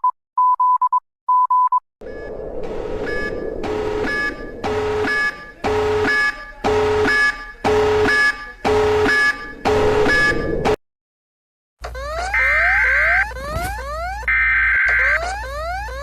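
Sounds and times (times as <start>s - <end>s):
loud buzzy alarm beeps: 2.0s - 10.8s, 12.0s - 16.0s
noisy electronic swell: 2.0s - 10.8s.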